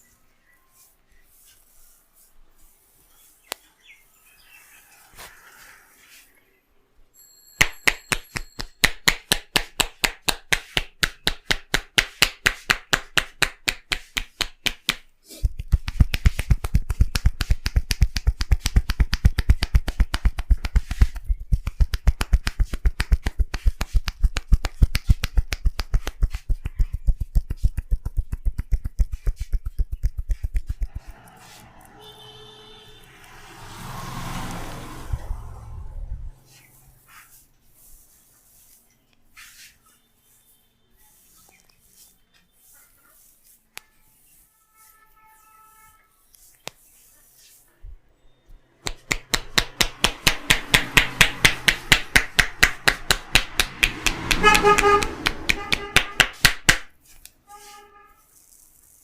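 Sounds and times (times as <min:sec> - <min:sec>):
hands slapping on skin: 0:07.6 - 0:31.8, 0:48.8 - 0:57.4.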